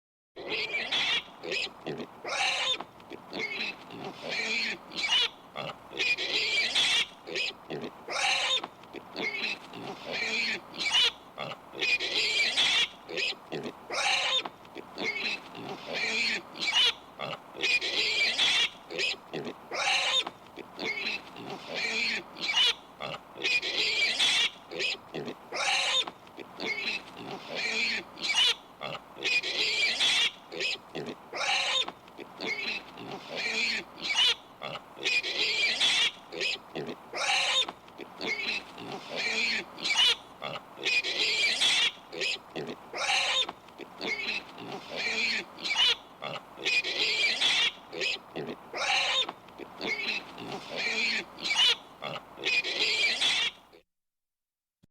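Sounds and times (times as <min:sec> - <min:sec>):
pig grunting and squealing: 0:00.4 - 0:53.6
pig snuffling: 0:01.4 - 0:12.5, 0:13.1 - 0:18.3, 0:18.9 - 0:23.2, 0:24.7 - 0:53.0.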